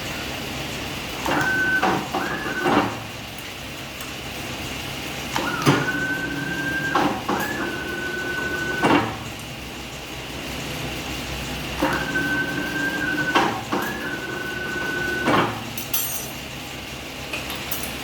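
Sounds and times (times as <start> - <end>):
steady machine hum: 0.0 - 17.3
servo drives whining: 5.4 - 9.2, 11.8 - 15.6.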